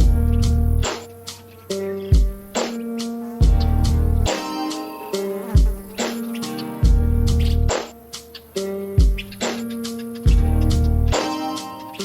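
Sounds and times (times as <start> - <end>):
deep bass hit: 0.0 - 0.9, 3.4 - 4.3, 6.9 - 7.7, 10.3 - 11.2
drum beat: 0.0 - 12.0
sustained instrument notes: 0.0 - 12.0.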